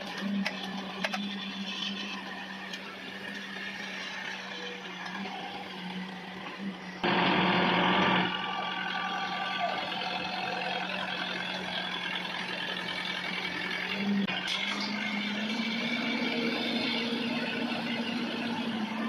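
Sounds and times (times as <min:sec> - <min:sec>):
compressor engine hum: 0:00.0 - 0:19.0.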